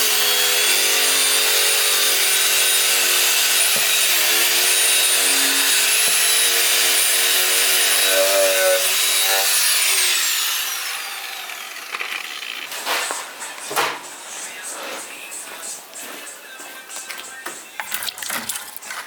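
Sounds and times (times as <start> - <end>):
grinder grinding metal: 0.0 - 13.7.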